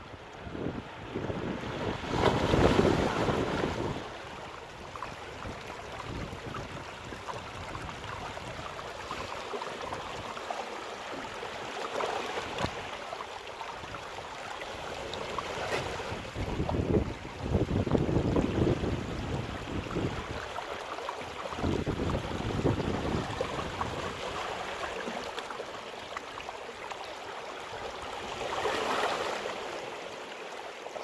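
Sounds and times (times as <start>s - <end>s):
wind rumbling on microphone: 0.0s - 9.1s, 15.5s - 20.6s, 21.3s - 24.7s
sea waves breaking on shore: 0.0s - 31.0s.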